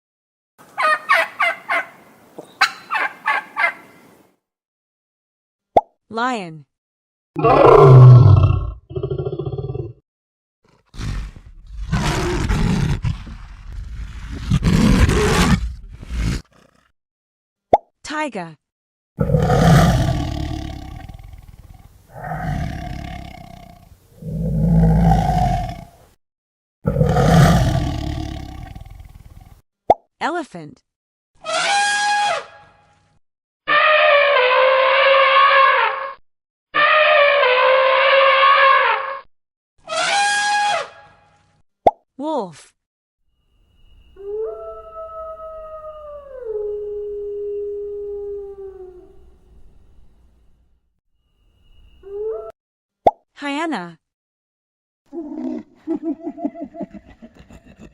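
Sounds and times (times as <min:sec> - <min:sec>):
wolf howling: 0:07.4 - 0:08.4, 0:44.2 - 0:49.4
tiger roaring: 0:07.4 - 0:10.0, 0:10.7 - 0:16.9, 0:19.2 - 0:26.0, 0:26.9 - 0:29.5.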